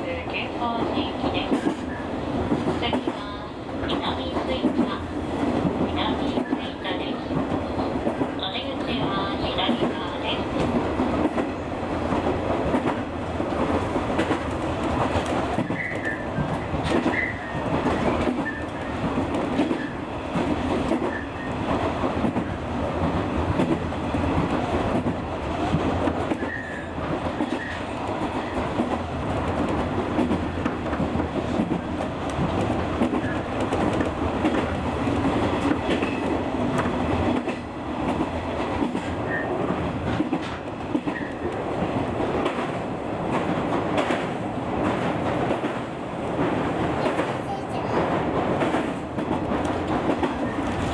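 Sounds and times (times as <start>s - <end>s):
train rolling noise: 0.0s - 50.9s.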